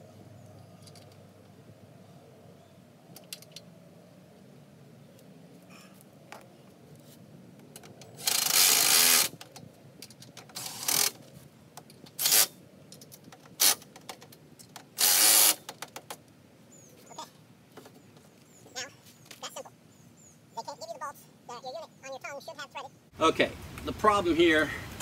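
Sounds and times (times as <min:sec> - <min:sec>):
power tool bursts: 0:15.0 - 0:15.6.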